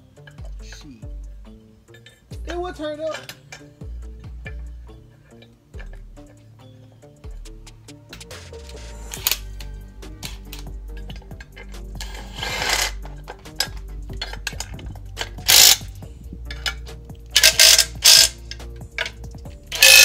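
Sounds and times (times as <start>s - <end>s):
background music: 0.0s - 20.0s
metal clinks: 1.9s - 2.4s
ratchet clicking: 7.2s - 20.0s.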